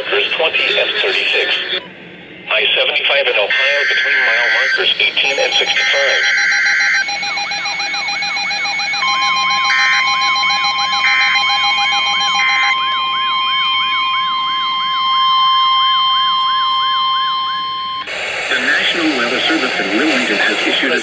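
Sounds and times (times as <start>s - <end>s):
steady warning alarm tone: 3.4s - 21.0s
wailing siren alarm: 3.5s - 20.3s
short data bursts: 3.5s - 21.0s.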